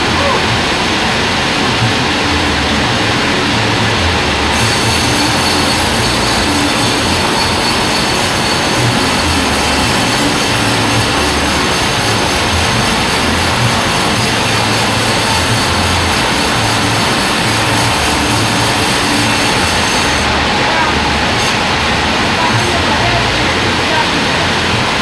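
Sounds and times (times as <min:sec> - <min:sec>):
band sawmill cutting log: 0:00.0 - 0:25.0.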